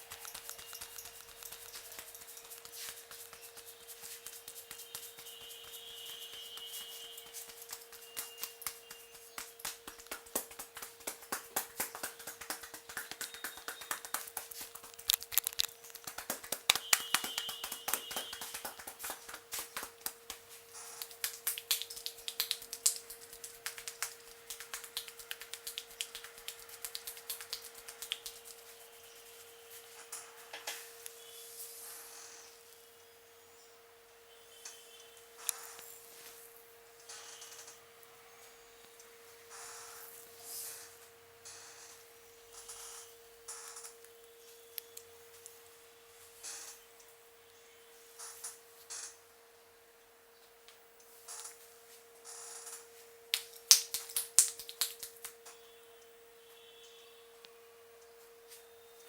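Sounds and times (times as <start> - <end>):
hands tapping and rubbing head: 0.0 - 30.8
faint steady hum: 0.0 - 59.0.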